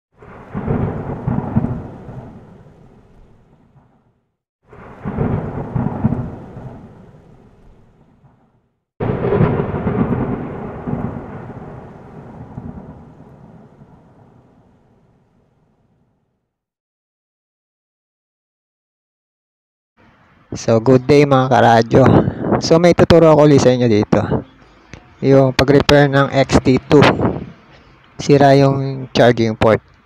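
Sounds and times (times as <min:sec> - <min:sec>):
thunder rumbling: 0:00.2 - 0:16.0, 0:20.5 - 0:24.4, 0:25.4 - 0:27.7.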